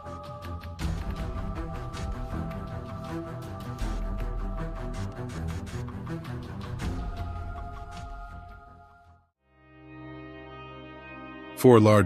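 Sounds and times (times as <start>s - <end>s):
background music with steady beat: 0.0s - 9.1s.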